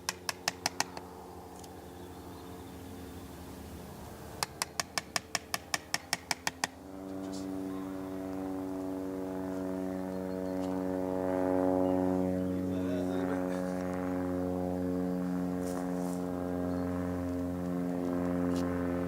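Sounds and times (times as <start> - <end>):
chisel tapping into bark: 0.0 - 1.0, 4.4 - 6.8
engine hum: 0.0 - 19.0.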